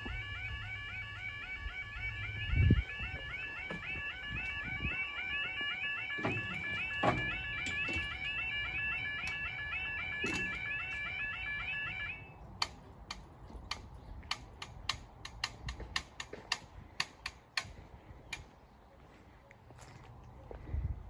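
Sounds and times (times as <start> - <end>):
level crossing alarm warbling: 0.0 - 12.5
sharp clicks: 12.6 - 17.8.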